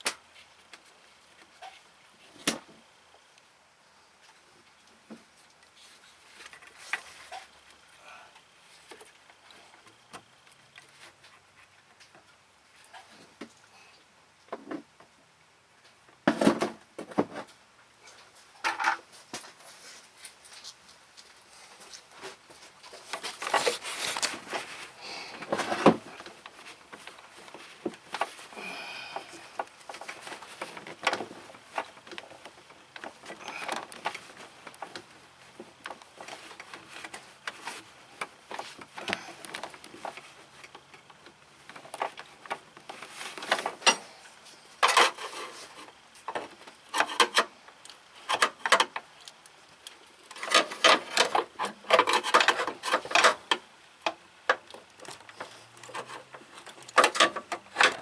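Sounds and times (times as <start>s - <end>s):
tools scraping and clicking: 55.1s - 58.0s.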